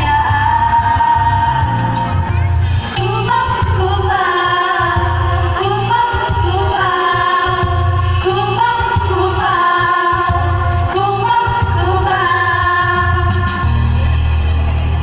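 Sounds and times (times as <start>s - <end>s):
instrumental backing track: 0.0s - 15.0s
group singing devotional song: 3.1s - 13.5s.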